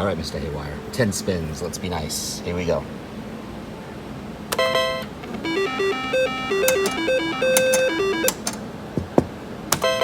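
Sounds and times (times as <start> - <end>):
casino background noise: 4.5 - 10.0
slot machine beeping tune: 4.6 - 8.4
slot machine reels clicking: 6.5 - 8.6.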